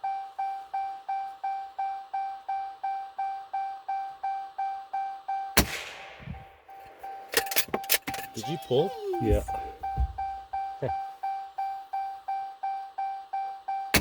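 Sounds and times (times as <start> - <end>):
car door chime dinging: 0.0 - 5.6, 6.3 - 14.0
gunshot: 5.6 - 6.6.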